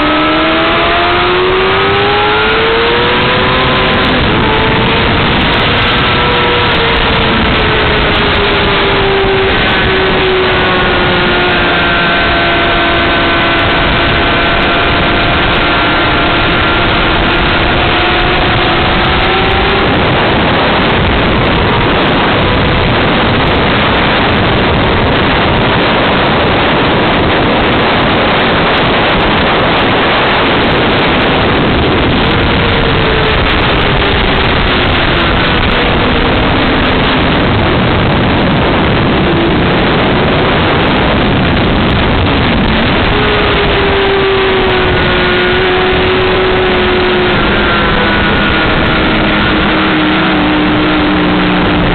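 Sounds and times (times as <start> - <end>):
motorcycle engine at speed: 0.0 - 51.9
rushing wind noise: 0.0 - 51.9.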